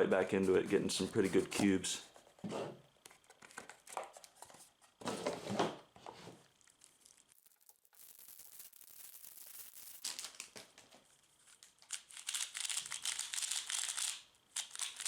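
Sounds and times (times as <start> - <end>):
plastic packaging crinkling: 6.4 - 15.0.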